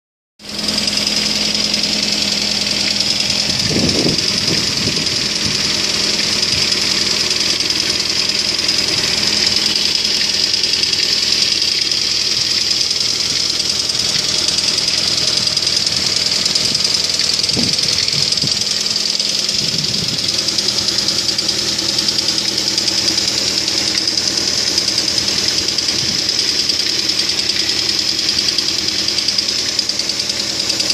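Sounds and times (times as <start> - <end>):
car engine idling: 0.4 - 30.9
engine knocking and crackling: 0.4 - 30.9
dull low thumps: 2.6 - 11.0, 12.4 - 22.2.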